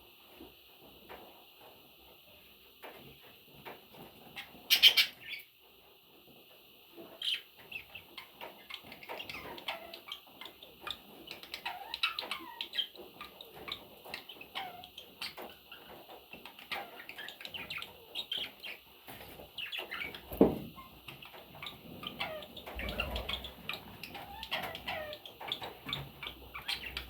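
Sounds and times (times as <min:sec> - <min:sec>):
budgerigars chirping and warbling: 0:04.4 - 0:05.5, 0:07.2 - 0:18.8, 0:19.6 - 0:27.0
background chatter of many birds: 0:22.1 - 0:27.0.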